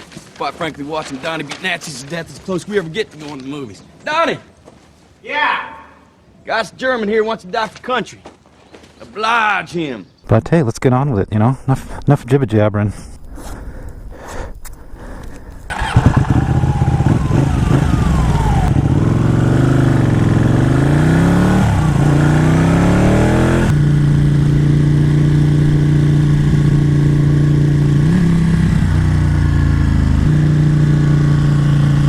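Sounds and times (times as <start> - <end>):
motorcycle engine revving: 15.7 - 32.0.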